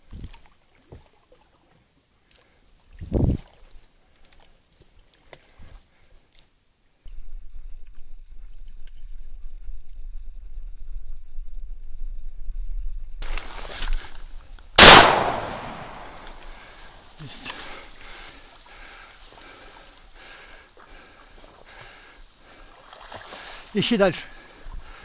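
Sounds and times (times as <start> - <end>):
shotgun shot: 14.8 - 16.6.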